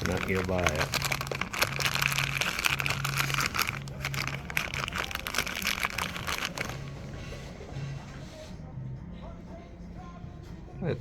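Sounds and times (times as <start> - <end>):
plastic packaging crinkling: 0.0 - 7.0.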